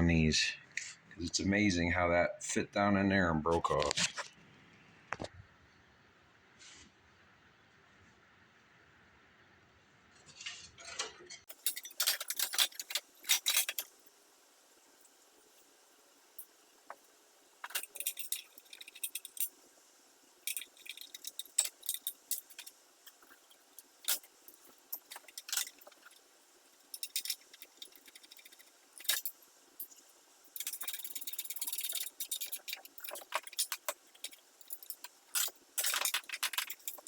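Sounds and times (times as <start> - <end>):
metal parts rattling: 10.3 - 14.0, 17.6 - 19.8, 20.4 - 37.0
metal tools clicking and clinking: 10.4 - 14.0, 17.6 - 19.7, 20.4 - 37.0.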